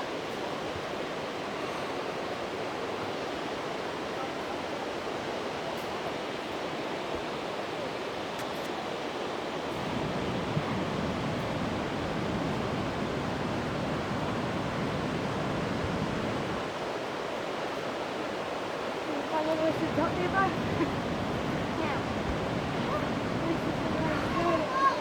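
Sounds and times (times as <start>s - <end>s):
waterfall rushing: 9.7s - 25.0s.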